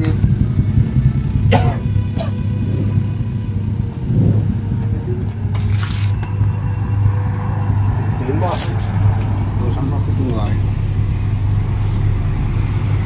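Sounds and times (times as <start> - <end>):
steady low rumble: 0.0 - 13.0
person coughing: 1.5 - 2.4.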